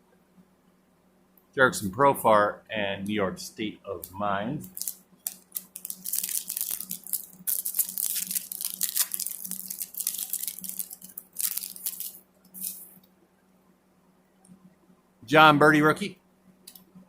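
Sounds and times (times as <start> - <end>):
foil wrapper tearing and crinkling: 4.6 - 13.0.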